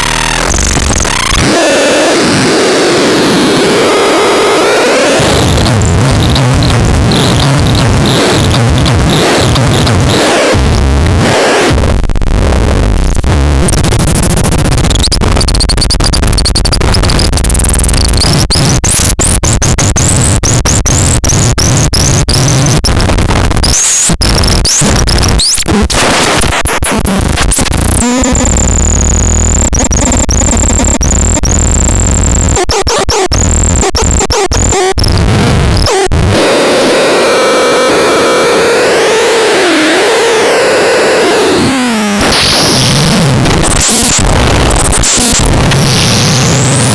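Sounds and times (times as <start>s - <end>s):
glitchy clicks: 0.0s - 46.9s
harsh electronic noise: 0.0s - 46.9s.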